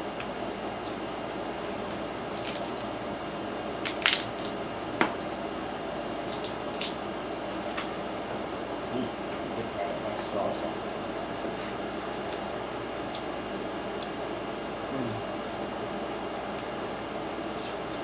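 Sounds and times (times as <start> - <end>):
crab shell cracking: 2.3 - 2.9, 3.8 - 4.6, 6.2 - 7.0.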